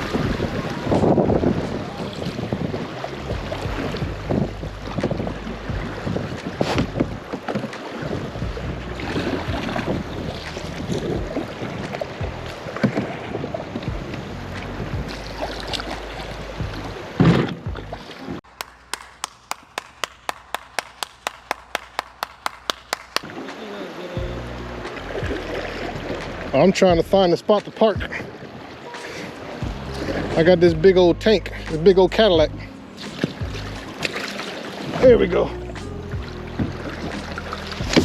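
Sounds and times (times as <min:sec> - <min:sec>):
wind buffeting microphone: 0:00.0 - 0:07.4, 0:08.0 - 0:18.0
music with ticking beat: 0:03.2 - 0:07.1, 0:08.4 - 0:11.5, 0:12.2 - 0:12.6, 0:13.8 - 0:16.9, 0:24.2 - 0:27.2, 0:28.9 - 0:38.0
knocks on boat: 0:03.3 - 0:07.8, 0:11.0 - 0:14.2, 0:16.6 - 0:18.0, 0:33.1 - 0:34.2.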